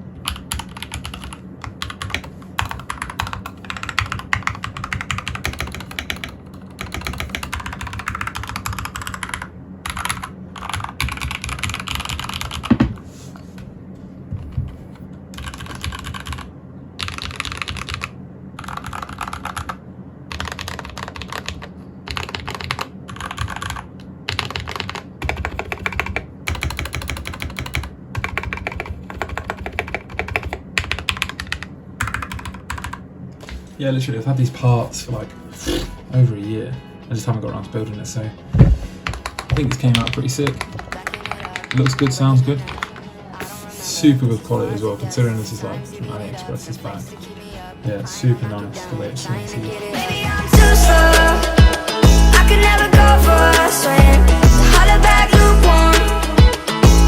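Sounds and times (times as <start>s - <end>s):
mechanical keyboard typing: 0.2s - 13.0s, 15.3s - 33.0s, 38.6s - 43.1s
loud thump: 38.5s - 38.9s.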